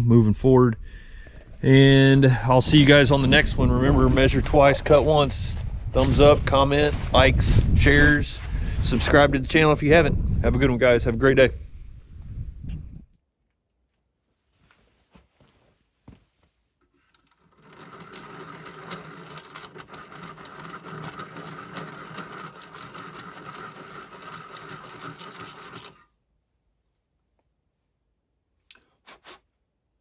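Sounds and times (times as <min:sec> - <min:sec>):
small machine motor rattling: 0:17.0 - 0:26.1.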